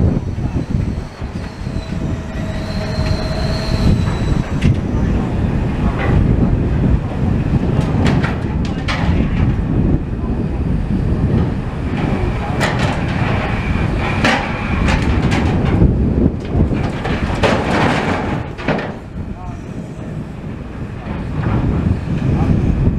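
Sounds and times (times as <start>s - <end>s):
demolition machinery rumbling: 0.0s - 22.9s
debris clanking and knocking: 7.8s - 9.6s, 12.0s - 19.2s.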